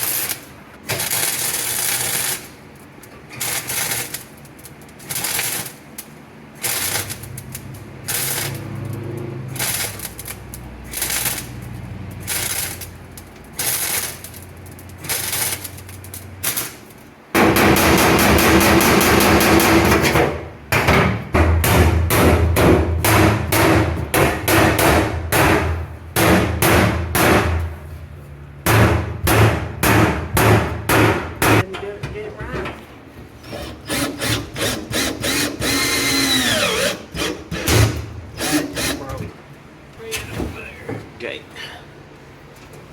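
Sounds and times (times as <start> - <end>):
welder crackling: 0.0 - 20.6, 33.5 - 40.1.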